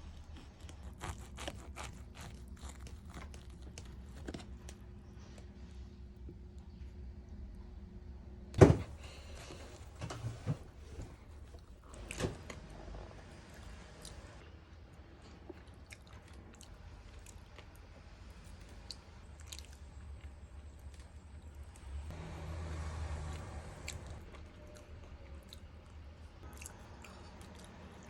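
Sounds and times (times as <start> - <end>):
person chewing and biting: 0.1 - 4.8.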